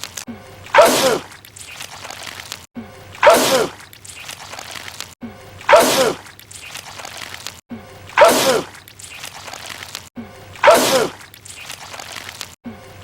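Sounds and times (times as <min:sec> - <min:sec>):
man sneezing: 0:03.2 - 0:03.8, 0:08.2 - 0:08.7, 0:10.6 - 0:11.2.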